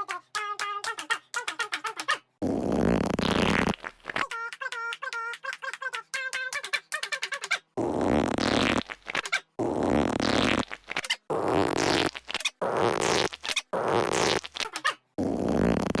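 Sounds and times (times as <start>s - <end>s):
fart sound effect: 2.4s - 4.3s, 7.8s - 16.0s.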